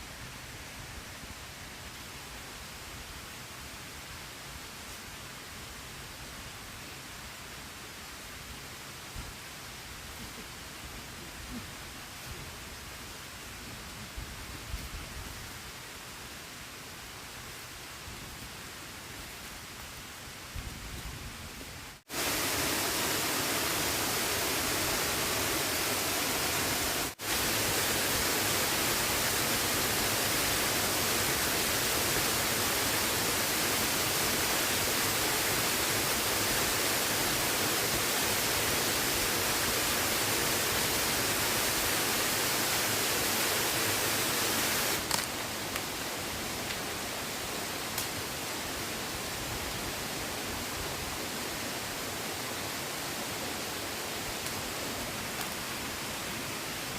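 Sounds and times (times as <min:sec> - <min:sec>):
rushing water: 0:21.9 - 0:56.9.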